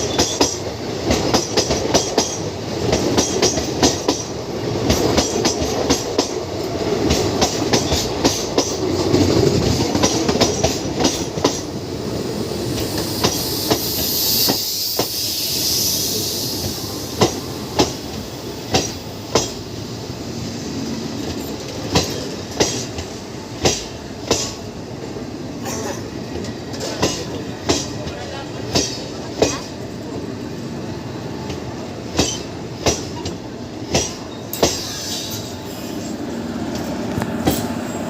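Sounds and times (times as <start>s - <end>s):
train rumble: 0.0s - 38.0s
high hiss: 10.8s - 21.2s, 34.5s - 38.0s.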